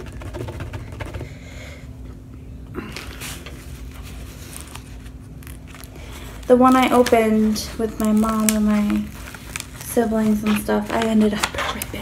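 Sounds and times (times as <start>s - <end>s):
steady low hum: 0.0s - 12.0s
canvas and paper rustling: 2.9s - 12.0s.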